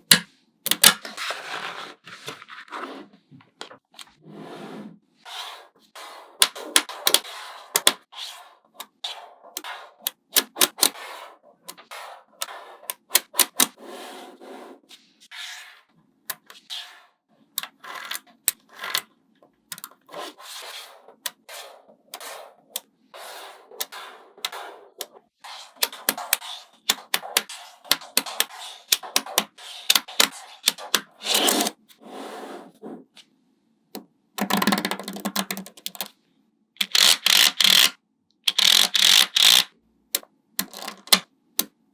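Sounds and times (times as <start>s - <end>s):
magnetic balls rubbing and scraping: 20.0s - 33.1s, 36.8s - 37.9s, 38.5s - 39.7s
magnetic balls clicking: 34.4s - 36.1s, 36.8s - 41.8s.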